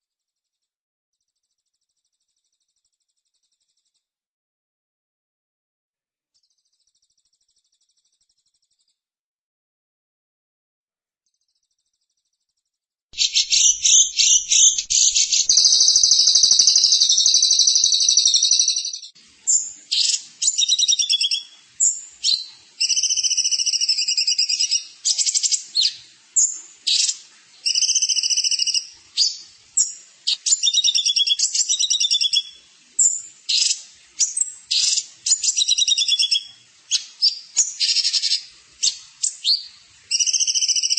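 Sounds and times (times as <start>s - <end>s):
songbird trilling song: 13.2s - 40.9s.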